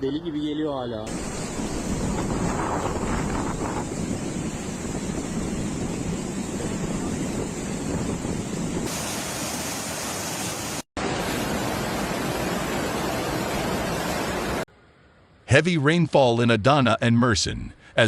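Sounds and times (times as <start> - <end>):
wind buffeting microphone: 1.1 - 8.9
floodwater rushing: 1.1 - 14.7.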